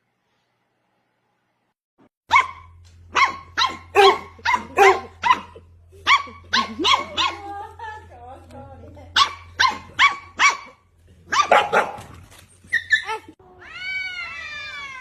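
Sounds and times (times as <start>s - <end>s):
dog barking: 2.3s - 7.5s, 9.2s - 12.2s.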